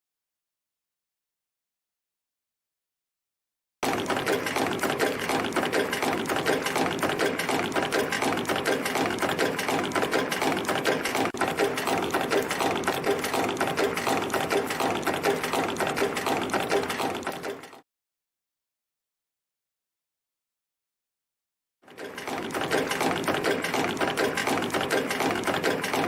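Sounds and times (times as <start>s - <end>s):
spring machine clattering: 3.8s - 17.8s, 21.9s - 26.0s.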